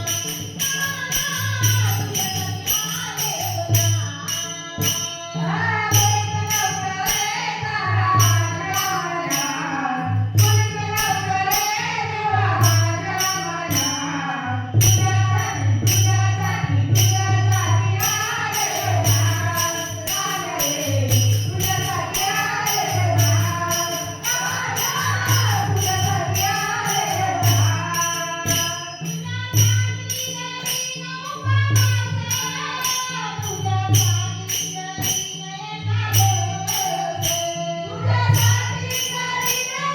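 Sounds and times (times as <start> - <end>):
jingling percussion: 0.0 - 39.9
woman singing folk song: 0.7 - 39.9
steady drum beat: 14.5 - 28.8.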